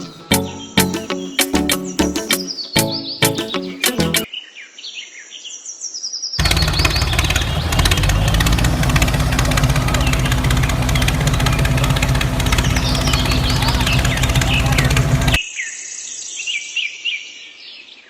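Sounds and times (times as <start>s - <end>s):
birds chirping: 0.0s - 4.3s, 6.4s - 15.4s
mechanical running noise with hum: 6.4s - 15.4s.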